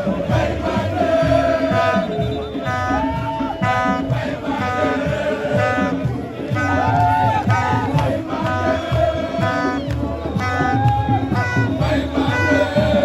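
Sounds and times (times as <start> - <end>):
driving drum beat: 0.0 - 13.0
loud music with singing voices: 0.0 - 13.0.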